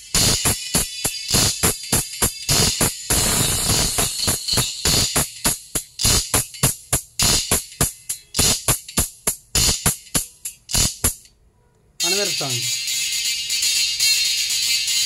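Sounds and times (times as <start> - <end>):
song with drum machine beat: 0.0 - 11.3, 12.0 - 15.0.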